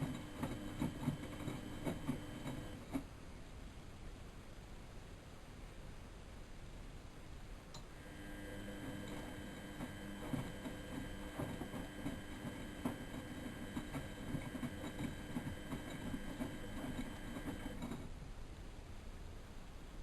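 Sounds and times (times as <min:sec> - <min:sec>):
washing machine motor hum: 0:00.0 - 0:03.0, 0:07.8 - 0:18.2.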